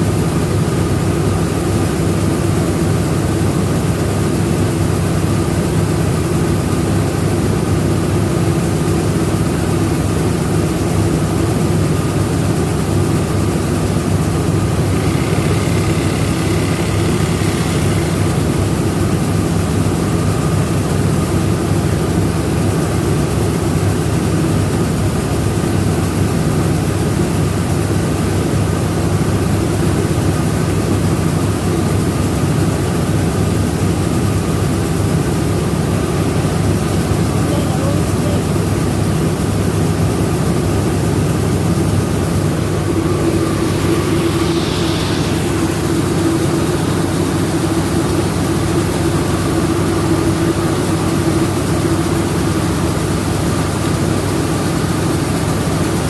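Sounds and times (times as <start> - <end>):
milling machinery drone: 0.0 - 24.4, 33.0 - 56.0
faint high tone: 37.2 - 38.7.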